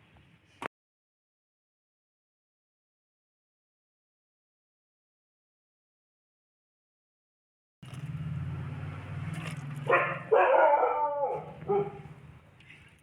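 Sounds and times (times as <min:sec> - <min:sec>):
dog barking: 0:09.8 - 0:12.2.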